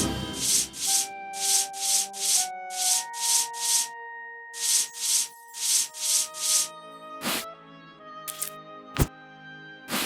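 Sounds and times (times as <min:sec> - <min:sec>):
light background music: 0:00.0 - 0:10.0
scratchy rustles: 0:00.4 - 0:03.9, 0:04.6 - 0:07.4.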